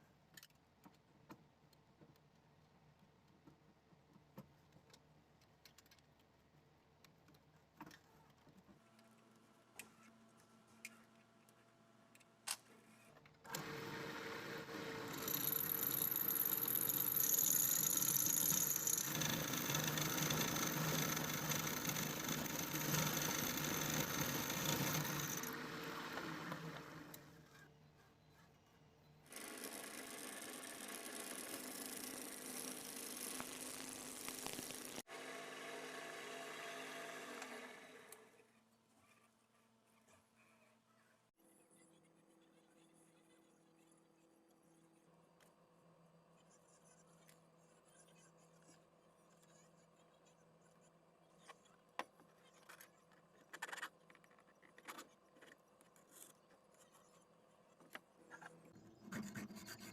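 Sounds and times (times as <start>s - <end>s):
power tool whining: 13.5s - 27.2s.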